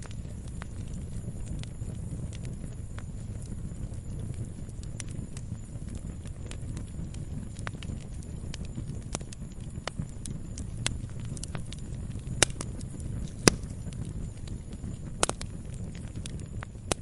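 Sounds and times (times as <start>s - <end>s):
campfire crackling and popping: 0.0s - 17.0s
low rumble of flame: 0.0s - 17.0s.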